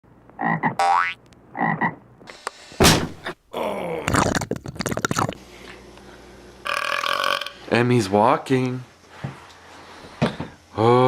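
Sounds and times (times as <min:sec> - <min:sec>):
frog croaking: 0:00.4 - 0:02.0, 0:06.6 - 0:07.6
loud thump: 0:02.8 - 0:03.4.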